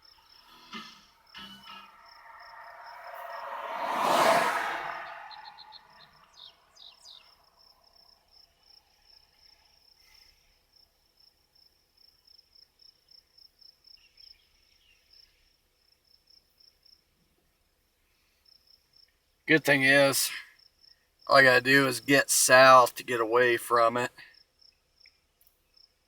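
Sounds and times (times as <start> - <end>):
crickets chirping: 0.0 - 17.1, 19.9 - 23.0
whooshing noise: 2.4 - 5.6.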